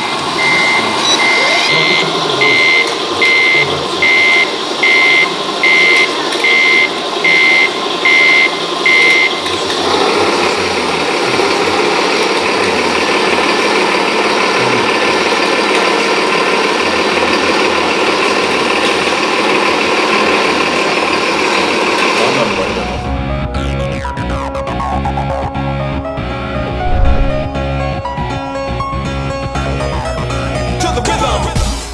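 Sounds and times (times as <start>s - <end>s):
toy truck reversing beeper: 0.0s - 23.2s
toy truck running with whine: 0.0s - 23.2s.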